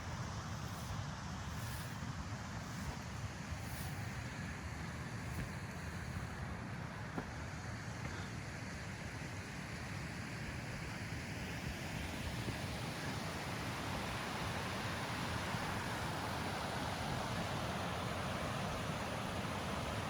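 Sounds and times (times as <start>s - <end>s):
mountain stream rushing: 11.9s - 20.0s.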